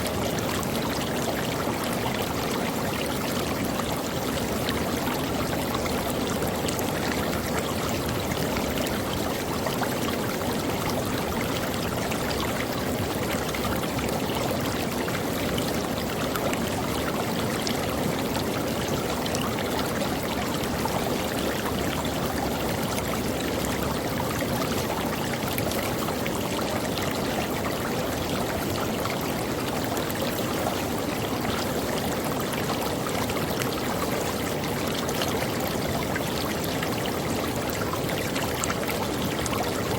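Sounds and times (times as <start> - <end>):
creek water splashing over rocks: 0.0 - 39.9.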